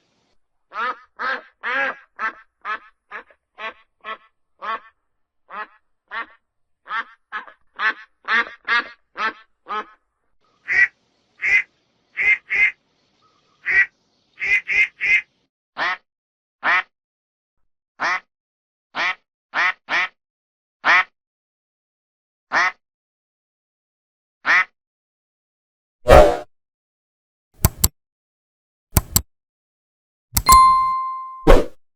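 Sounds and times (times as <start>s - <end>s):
duck quacking: 0.7s - 10.0s, 10.7s - 12.8s, 13.6s - 16.0s, 16.6s - 16.9s, 18.0s - 18.2s, 19.0s - 20.1s, 22.5s - 22.8s.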